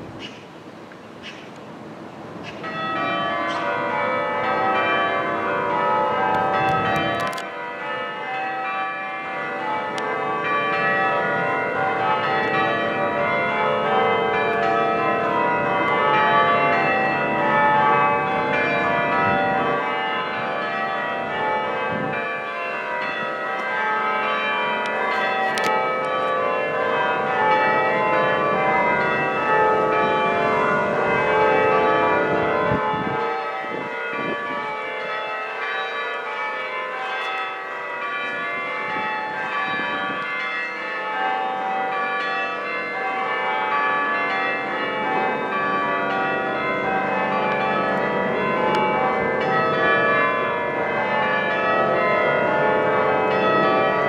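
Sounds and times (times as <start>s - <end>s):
church bells ringing changes: 2.2s - 54.0s.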